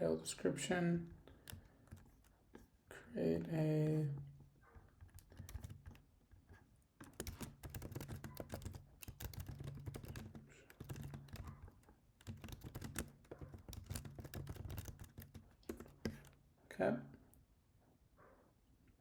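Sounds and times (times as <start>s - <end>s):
computer keyboard typing: 1.2s - 2.3s, 5.0s - 6.0s, 7.0s - 16.4s.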